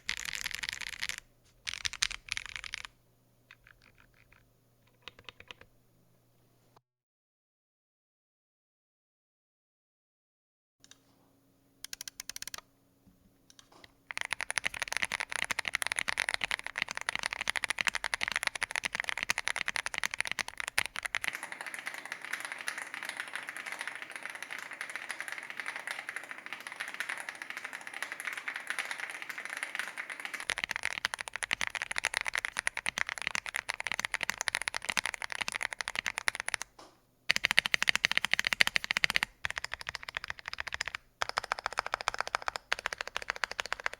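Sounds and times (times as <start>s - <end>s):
typing on mechanical keyboard: 0.0s - 2.9s, 3.6s - 5.7s, 11.8s - 12.6s, 13.5s - 36.7s, 37.3s - 43.9s.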